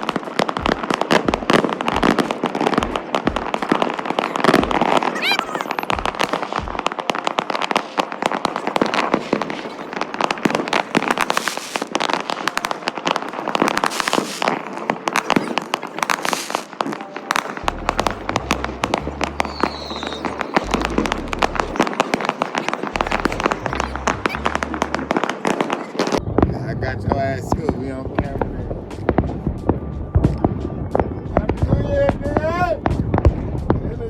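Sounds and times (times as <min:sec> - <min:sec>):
firecrackers cracking and popping: 0:00.0 - 0:34.0
firework whistle rising: 0:03.6 - 0:26.2.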